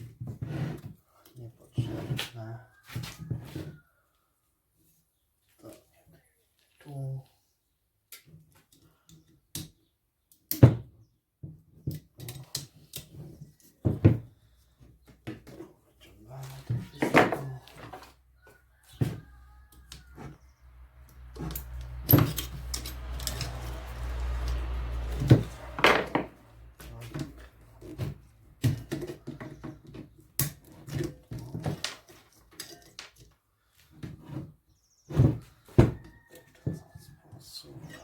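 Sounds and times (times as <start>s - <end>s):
scraping and rustling: 14.7s - 36.1s
metal parts knocking and clinking: 21.3s - 23.8s.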